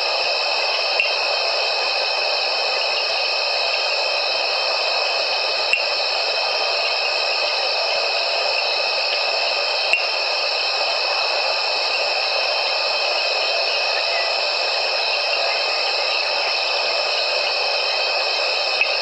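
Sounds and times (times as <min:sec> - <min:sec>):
insect chorus drone: 0:00.0 - 0:19.0
sharp ticks: 0:05.7 - 0:05.9, 0:09.9 - 0:10.2.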